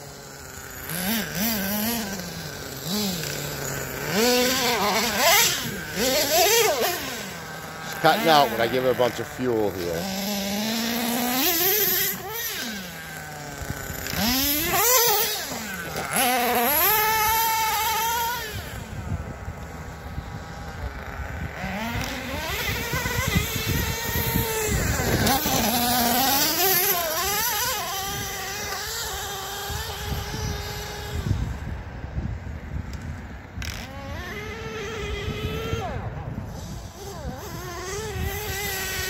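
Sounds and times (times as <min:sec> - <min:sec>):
rc truck engine revving: 0:00.0 - 0:39.0.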